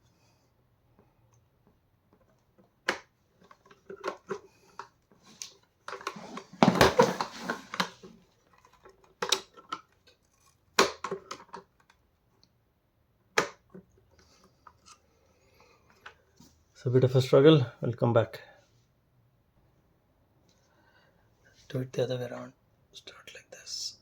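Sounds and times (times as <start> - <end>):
plastic parts clicking and scraping: 1.3 - 12.5, 13.4 - 16.6.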